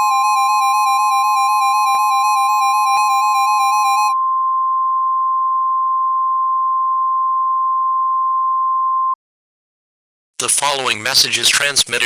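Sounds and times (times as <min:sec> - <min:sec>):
electronic music: 0:00.0 - 0:04.2.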